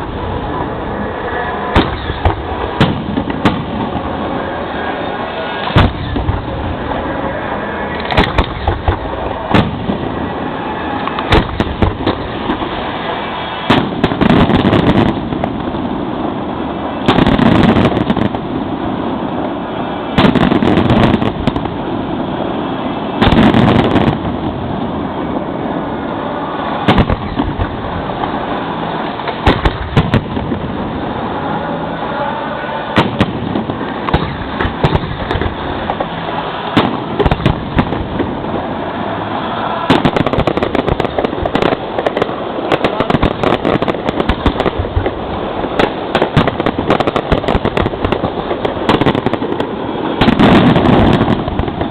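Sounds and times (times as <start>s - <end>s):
fireworks bangs: 0.0s - 51.9s.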